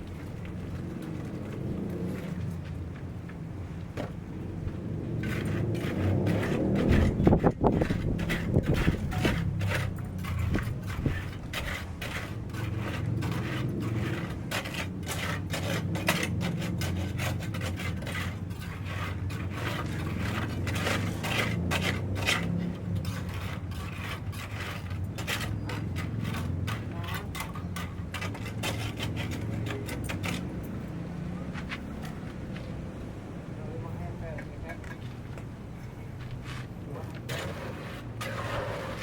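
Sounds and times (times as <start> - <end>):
scraping and rubbing strokes: 4.6 - 32.6, 36.2 - 39.0.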